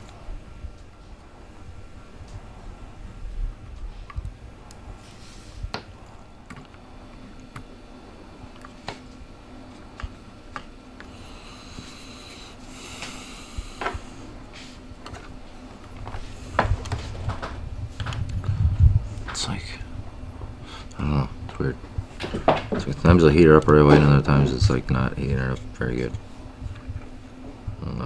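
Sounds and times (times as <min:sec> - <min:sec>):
faint steady hum: 0:00.0 - 0:28.0
clicks and taps handling wires: 0:20.4 - 0:27.8.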